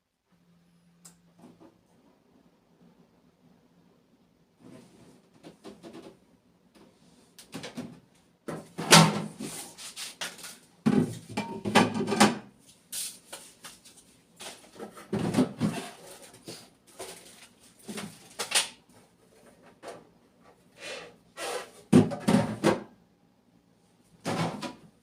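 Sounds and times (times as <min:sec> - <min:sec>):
refrigerator parts knocking and rattling: 0:07.5 - 0:09.5, 0:10.8 - 0:12.5, 0:14.4 - 0:18.6, 0:21.9 - 0:23.0, 0:24.2 - 0:24.9.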